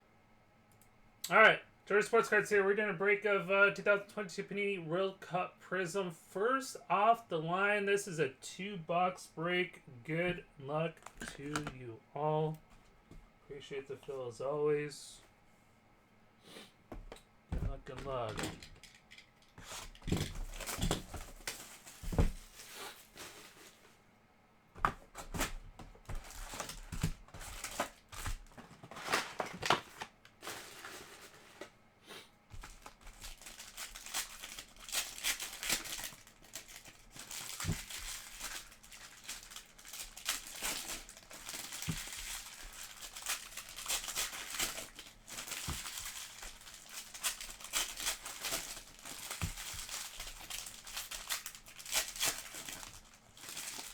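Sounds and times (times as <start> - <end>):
plastic wrappers crinkling and tearing: 17.7 - 23.9, 25.2 - 31.7, 32.6 - 53.9.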